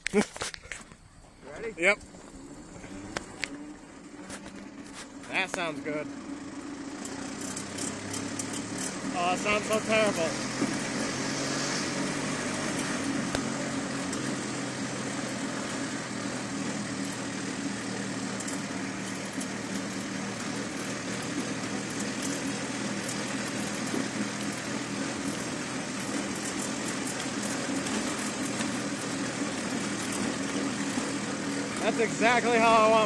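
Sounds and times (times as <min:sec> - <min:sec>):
road and rattle noise: 0:00.0 - 0:33.0
vehicle engine running: 0:00.4 - 0:33.0.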